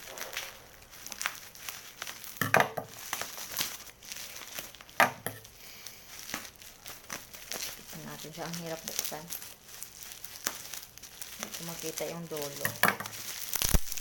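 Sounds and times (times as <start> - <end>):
plastic wrap crinkling and tearing: 0.0 - 14.0.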